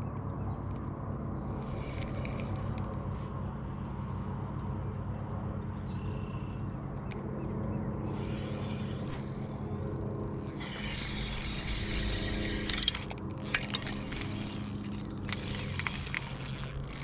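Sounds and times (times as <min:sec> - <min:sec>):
boat motor humming: 0:07.2 - 0:17.0.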